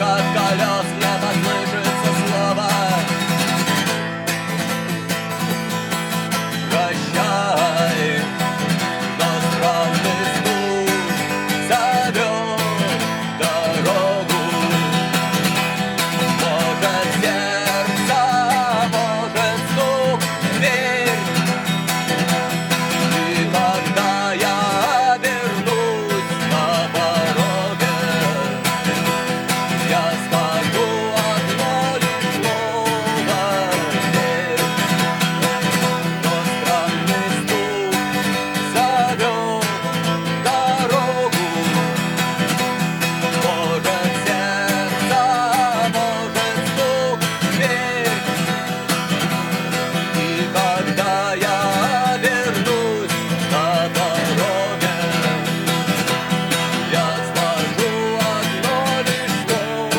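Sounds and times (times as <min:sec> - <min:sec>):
man singing: 0:00.0 - 0:59.9
strummed acoustic guitar: 0:00.0 - 0:59.9.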